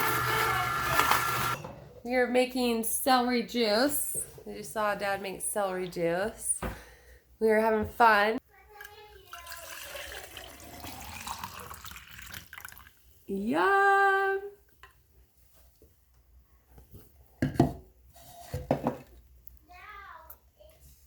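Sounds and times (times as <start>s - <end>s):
liquid running and splashing: 9.2s - 13.0s.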